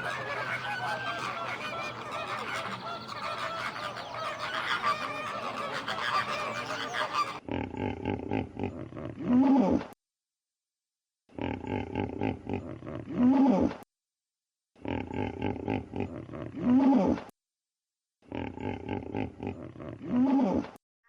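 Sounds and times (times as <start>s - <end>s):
geese honking: 0.0s - 7.4s
pulsing animal call: 0.0s - 7.4s.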